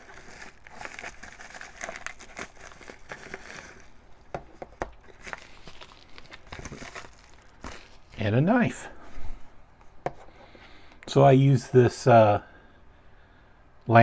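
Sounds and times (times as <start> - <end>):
packaging rustling and crinkling: 0.0 - 9.4.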